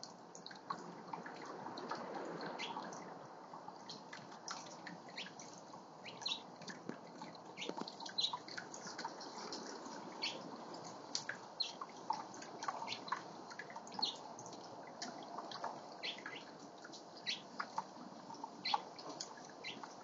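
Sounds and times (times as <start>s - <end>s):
birds splashing in water: 0.0s - 20.0s
fountain trickling and splashing: 0.0s - 20.0s
small birds chirping: 2.6s - 2.9s, 5.1s - 6.5s, 7.5s - 10.5s, 11.2s - 13.2s, 13.9s - 14.3s, 16.0s - 20.0s.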